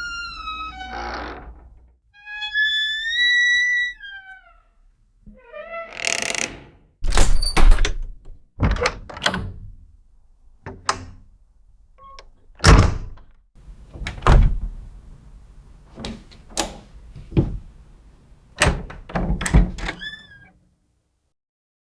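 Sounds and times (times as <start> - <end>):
door hinge squeaks: 0.0 - 1.6, 2.2 - 4.7, 5.3 - 7.9, 18.6 - 20.5
door latch and frame knocks: 13.6 - 20.4.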